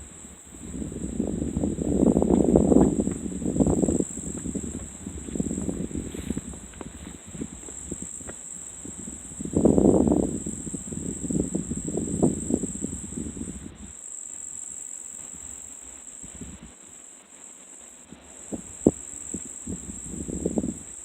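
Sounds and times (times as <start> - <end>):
insects chirping: 0.0 - 21.0
rustling in brush: 1.7 - 9.0.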